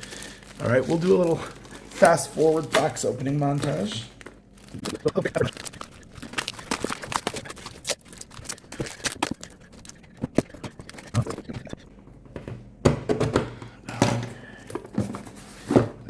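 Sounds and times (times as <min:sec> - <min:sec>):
package being torn open: 0:00.0 - 0:11.2.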